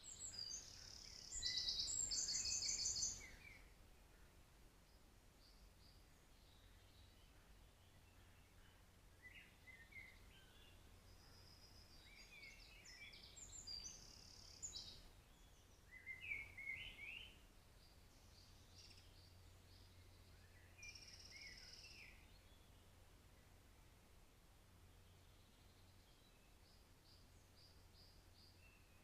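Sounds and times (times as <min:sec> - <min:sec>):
birds twittering: 0:00.0 - 0:03.7
faint low hum: 0:00.0 - 0:29.0.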